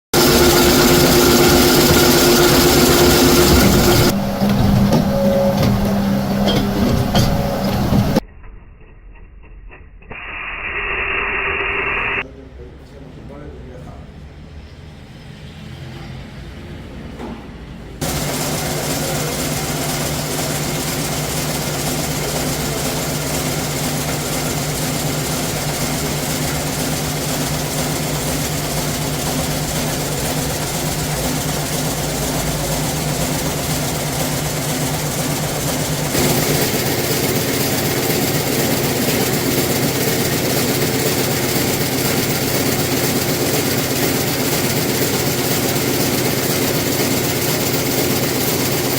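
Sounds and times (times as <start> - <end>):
factory machinery humming: 0.0 - 8.2, 18.0 - 48.9.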